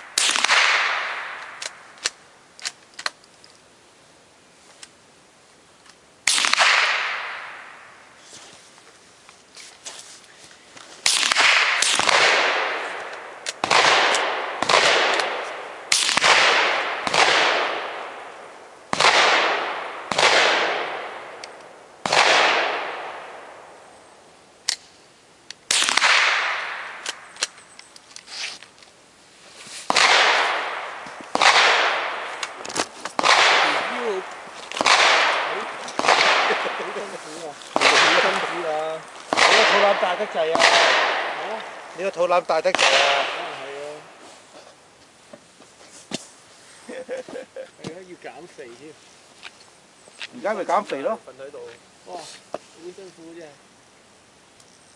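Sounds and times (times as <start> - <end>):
rifle shots echoing: 0.0 - 2.8, 6.2 - 8.0, 11.0 - 24.0, 25.7 - 27.6, 29.9 - 44.2.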